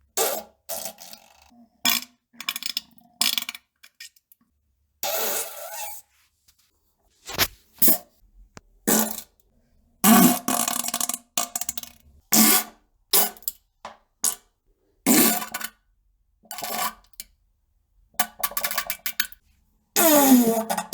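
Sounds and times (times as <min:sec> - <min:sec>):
fart sounds: 0:07.3 - 0:07.6.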